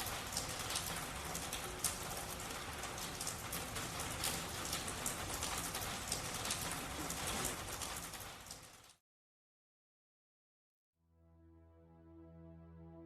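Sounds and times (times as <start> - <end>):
rain falling: 0.0 - 9.0
sharp raindrop impacts: 0.0 - 9.0.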